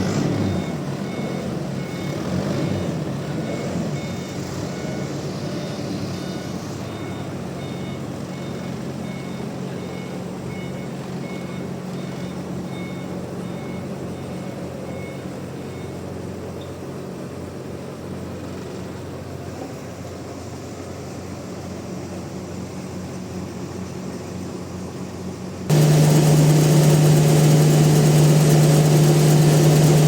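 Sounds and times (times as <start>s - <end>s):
heavy machinery engine running: 0.0s - 12.8s, 25.7s - 30.0s
backup alarm beeping: 25.7s - 30.0s.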